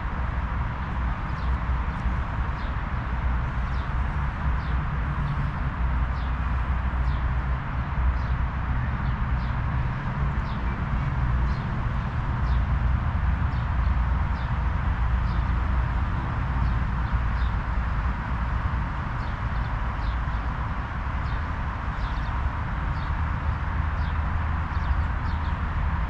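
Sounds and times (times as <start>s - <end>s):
outdoor ambience rumble and hiss: 0.0s - 26.0s
small birds chirping: 21.2s - 25.8s.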